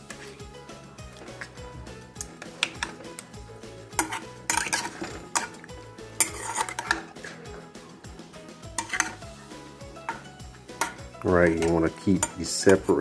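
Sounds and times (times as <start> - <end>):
faint background music: 0.0 - 13.0
utensil scraping and clinking on dish: 3.8 - 7.7, 8.7 - 9.4, 10.0 - 13.0.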